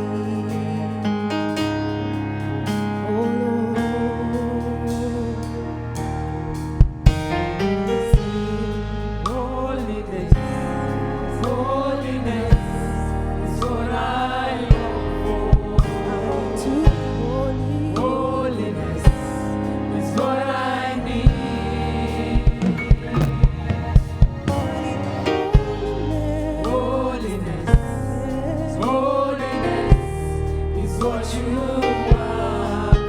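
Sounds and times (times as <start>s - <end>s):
person singing: 0.0s - 2.0s, 8.0s - 33.0s
held instrumental chords: 0.0s - 33.0s
steady bass: 0.0s - 33.0s.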